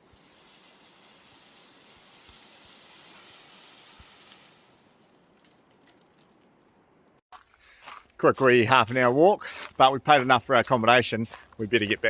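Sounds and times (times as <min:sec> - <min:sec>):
wind rustling leaves: 0:00.0 - 0:06.8.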